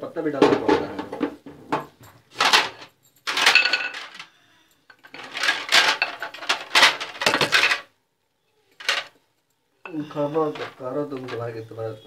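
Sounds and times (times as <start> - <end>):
metal utensils clattering: 0.4 - 4.3, 4.9 - 7.9, 8.8 - 9.2, 9.9 - 11.8.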